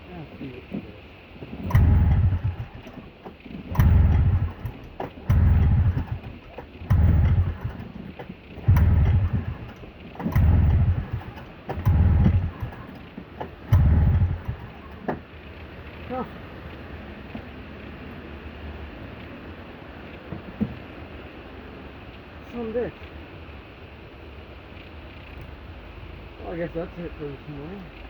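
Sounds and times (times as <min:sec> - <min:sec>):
snowmobile engine pull-starting: 0:00.7 - 0:16.3.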